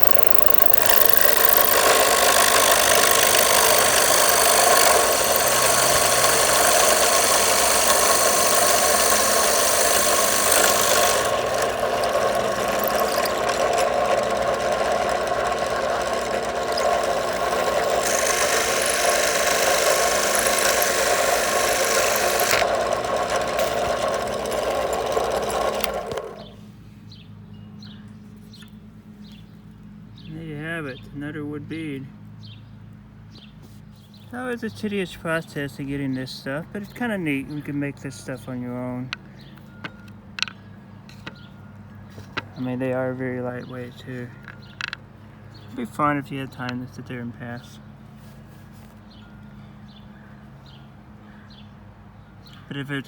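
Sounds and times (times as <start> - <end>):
electric drill cutting wood: 0.0 - 26.6.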